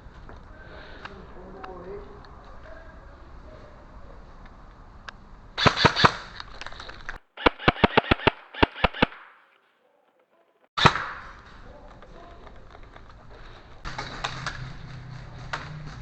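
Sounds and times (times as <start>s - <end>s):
airsoft guns firing: 5.6s - 9.6s, 10.8s - 11.6s.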